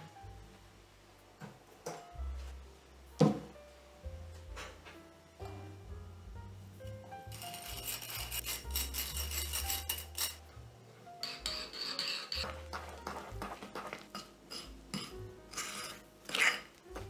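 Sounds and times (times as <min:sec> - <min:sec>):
soft background music: 0:00.0 - 0:17.0
utensil scraping a bowl: 0:07.3 - 0:10.5, 0:11.2 - 0:16.8.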